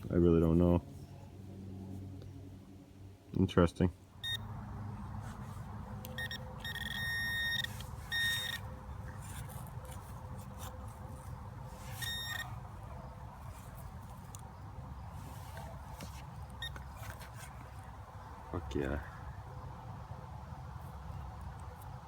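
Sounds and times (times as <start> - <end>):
low background noise: 0.0 - 22.0
metal detector beeps: 4.2 - 4.5, 6.1 - 8.7, 11.9 - 12.6, 16.6 - 16.9.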